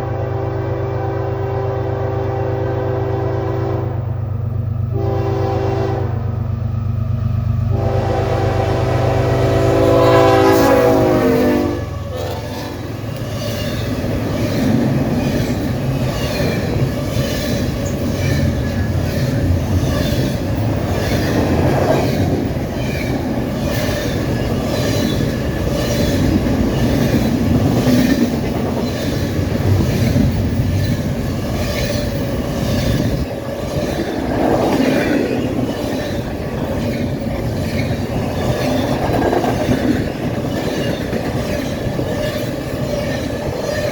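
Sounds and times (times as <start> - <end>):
locomotive horn: 0.0 - 4.3, 4.9 - 6.4, 7.7 - 13.5
train wheels clicking on rails: 10.0 - 43.9.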